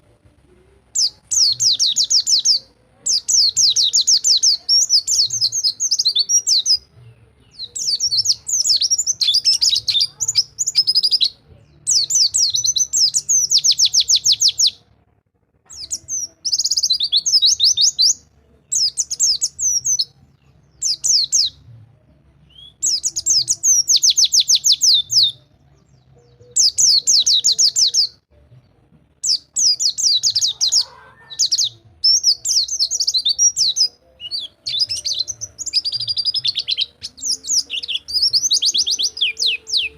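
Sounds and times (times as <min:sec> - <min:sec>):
bird singing rapid trills: 0:01.0 - 0:06.8, 0:07.5 - 0:14.8, 0:15.7 - 0:21.6.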